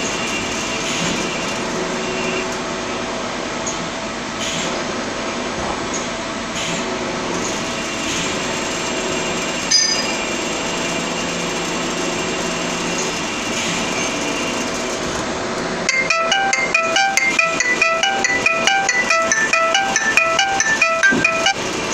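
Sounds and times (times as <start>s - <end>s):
sharp metallic clink: 9.7s - 10.2s
music with quick repeating notes: 15.9s - 21.6s.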